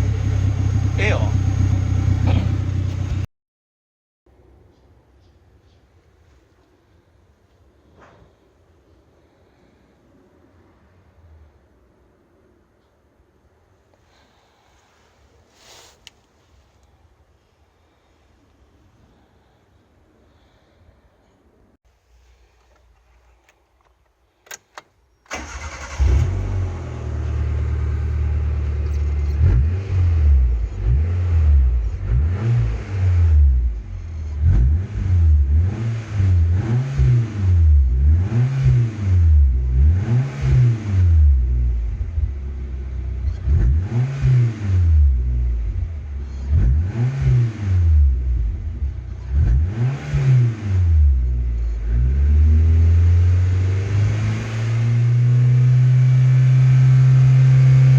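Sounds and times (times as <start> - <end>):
car engine revving and idling: 0.0 - 3.3, 25.3 - 57.9.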